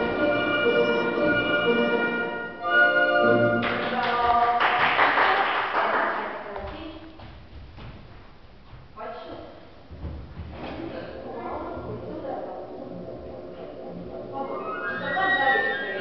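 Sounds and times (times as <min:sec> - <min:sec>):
classical orchestral music: 0:00.0 - 0:04.0, 0:12.6 - 0:16.0.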